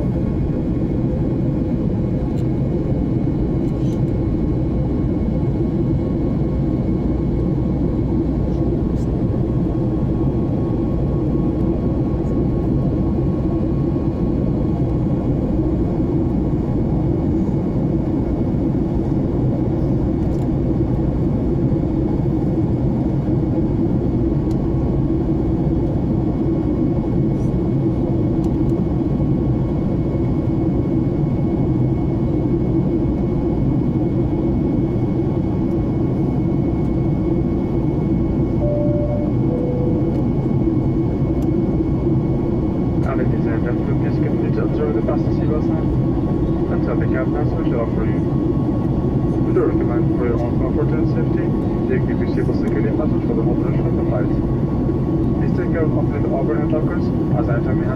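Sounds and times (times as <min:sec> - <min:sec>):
airliner engine and airflow rumble: 0:00.0 - 0:57.9
faint steady whine: 0:38.5 - 0:41.8.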